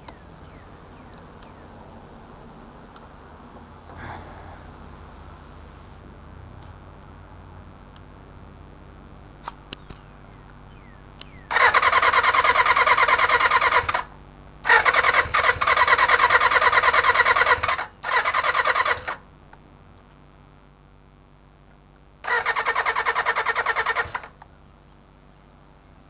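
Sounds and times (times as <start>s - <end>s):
electric starter cranking engine: 11.5s - 19.2s, 22.2s - 24.4s.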